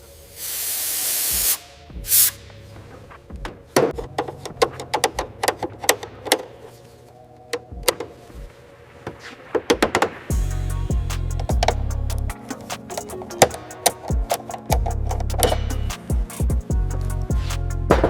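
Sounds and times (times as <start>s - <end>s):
spray hissing: 0.2s - 2.3s.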